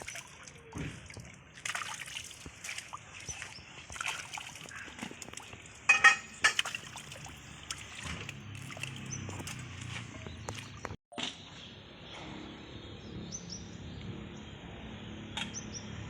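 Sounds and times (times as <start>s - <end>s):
water splashing and sloshing: 0.0s - 11.5s.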